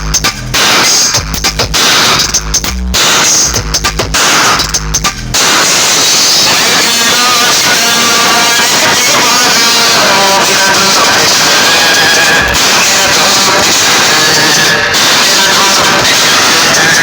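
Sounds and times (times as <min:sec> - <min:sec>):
dense distorted noise: 0:00.0 - 0:17.0
wavering high-pitched tones: 0:09.7 - 0:17.0.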